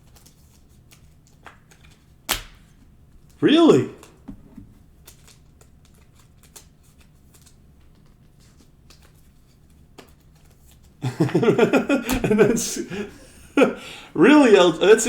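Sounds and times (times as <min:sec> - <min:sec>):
man speaking: 0:03.4 - 0:04.1, 0:11.0 - 0:15.0
cards clicking and sliding: 0:11.9 - 0:13.7.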